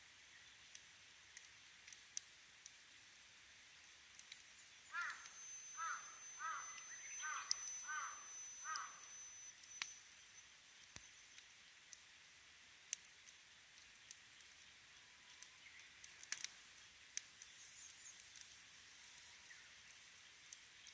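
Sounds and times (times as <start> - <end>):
campfire crackling and popping: 0.0 - 20.9
bird calling: 4.9 - 9.7.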